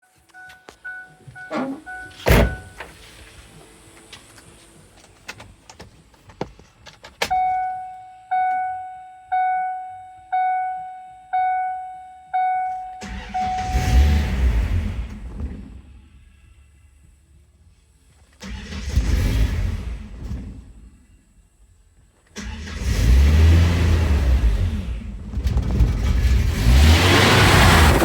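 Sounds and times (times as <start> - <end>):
dashboard warning chime: 0.0 - 2.9, 7.3 - 14.0
car engine cranking and starting: 0.2 - 8.9, 12.4 - 28.0
door thump: 1.6 - 2.8.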